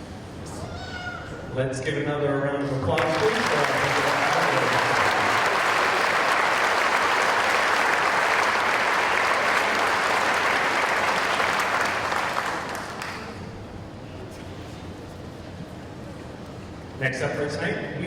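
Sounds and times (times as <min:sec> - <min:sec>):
audience applauding: 0:03.0 - 0:13.5.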